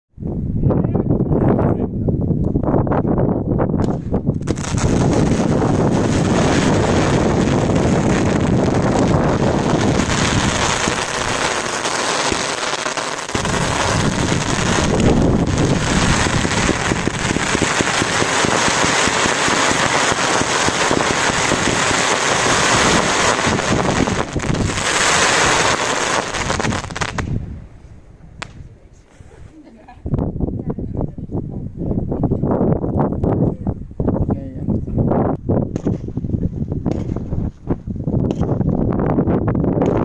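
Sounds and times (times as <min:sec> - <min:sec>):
fireworks barrage of rapid bangs: 0:03.8 - 0:27.4, 0:36.9 - 0:37.4, 0:38.2 - 0:38.7
fireworks crackling: 0:03.8 - 0:29.2, 0:36.8 - 0:38.8.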